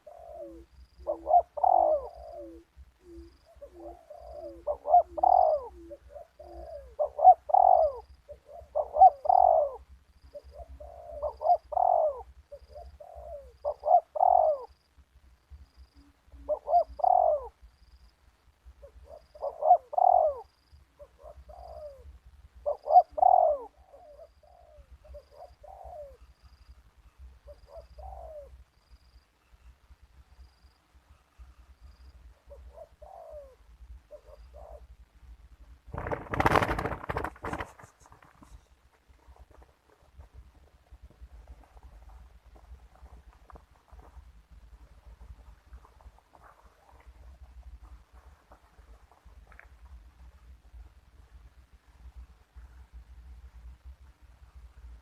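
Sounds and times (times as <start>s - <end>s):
dove cooing: 0.0s - 14.8s, 15.8s - 17.7s, 18.7s - 29.1s, 31.4s - 35.1s.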